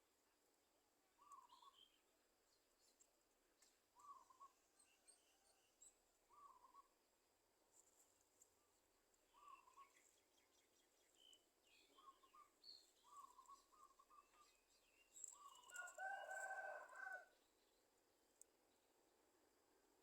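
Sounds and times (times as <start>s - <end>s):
bird calls and chirps: 1.2s - 7.0s, 8.5s - 17.8s.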